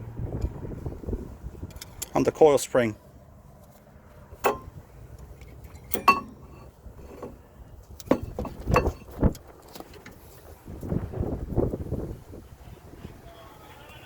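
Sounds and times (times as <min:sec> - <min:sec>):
metallic clinks and knocks: 0:04.4 - 0:04.8, 0:05.5 - 0:07.4, 0:08.0 - 0:09.4.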